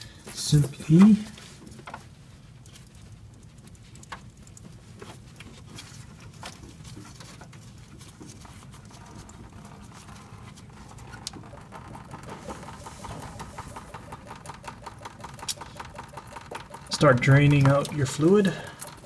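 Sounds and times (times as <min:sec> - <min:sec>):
low steady hum: 0:00.0 - 0:19.0
coolant dripping into pan: 0:02.1 - 0:19.0.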